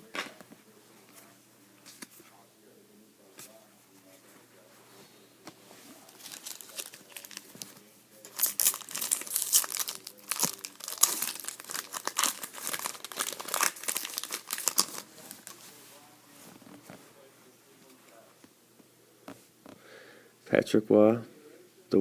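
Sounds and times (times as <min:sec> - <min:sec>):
foil wrapper tearing and crinkling: 0:06.1 - 0:07.6, 0:08.2 - 0:15.6.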